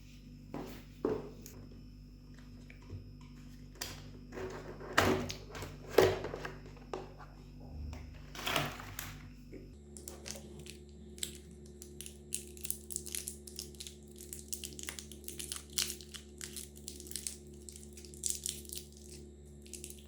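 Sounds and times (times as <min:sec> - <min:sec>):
wrapping crinkling and crackling: 0:10.0 - 0:20.0.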